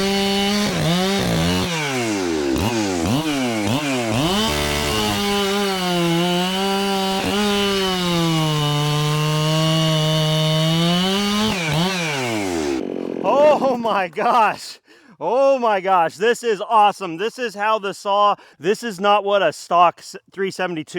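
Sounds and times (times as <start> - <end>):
chainsaw revving: 0.0 - 14.5.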